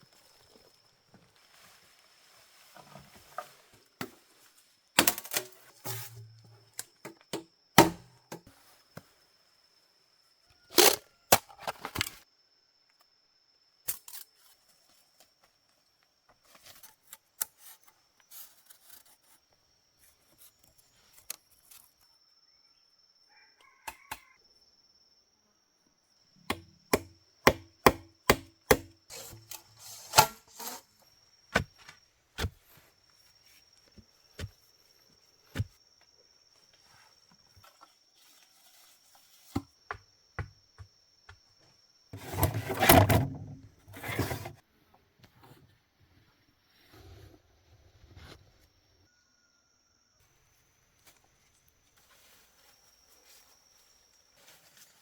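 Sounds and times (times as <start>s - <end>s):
blade chopping into wood: 7.8s - 8.2s, 26.5s - 30.8s.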